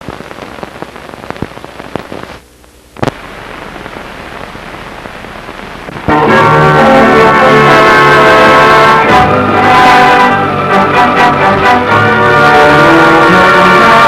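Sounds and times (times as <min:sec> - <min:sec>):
clicks and pops: 0:00.0 - 0:02.4, 0:03.0 - 0:06.2
film soundtrack crackle and hiss: 0:00.0 - 0:14.0
orchestral music with brass: 0:06.3 - 0:14.0.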